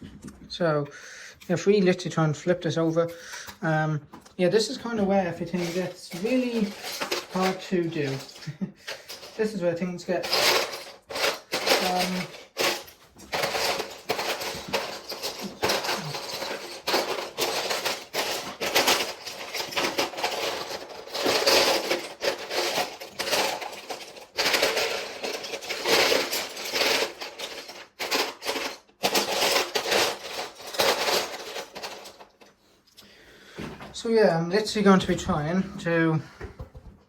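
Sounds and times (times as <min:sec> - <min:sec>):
plastic bricks clattering: 0:04.9 - 0:32.5.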